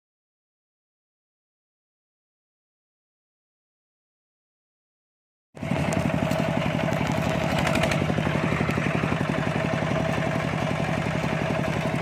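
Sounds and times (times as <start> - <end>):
small engine running: 5.6 - 12.0.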